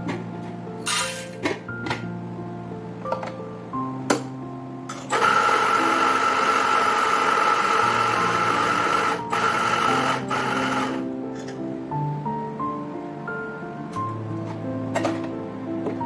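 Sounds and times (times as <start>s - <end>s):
soft background music: 0.0s - 16.0s
espresso machine pump buzzing: 5.0s - 11.0s.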